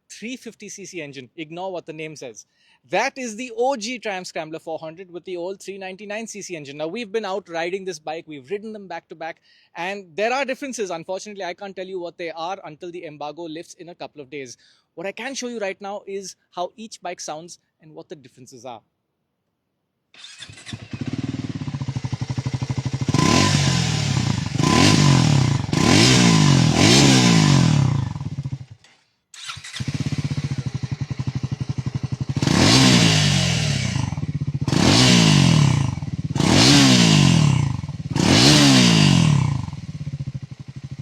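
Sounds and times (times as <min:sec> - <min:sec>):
motorcycle engine idling and revving: 0:20.2 - 0:41.0.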